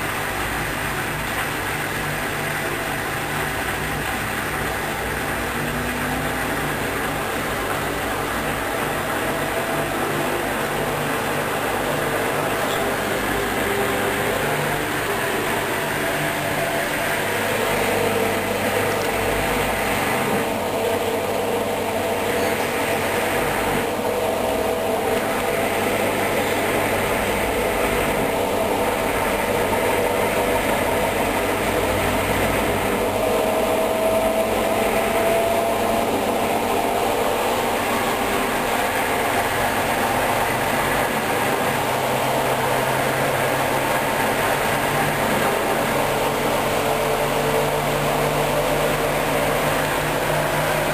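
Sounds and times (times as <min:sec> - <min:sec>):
washing machine drum spinning: 0:00.0 - 0:50.9.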